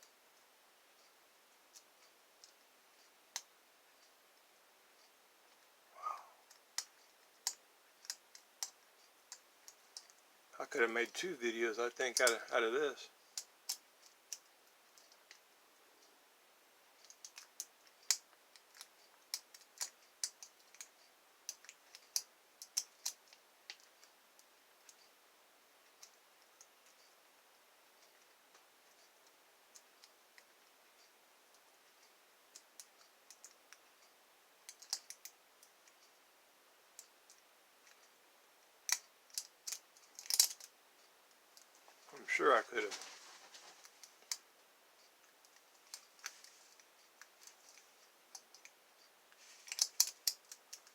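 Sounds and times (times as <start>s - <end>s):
lock picks clicking in a lock: 38.9s - 40.7s.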